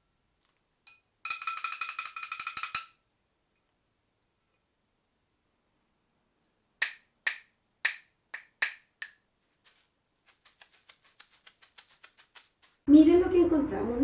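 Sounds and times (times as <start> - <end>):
jingling percussion shaken: 0.9 - 3.0, 9.4 - 12.9.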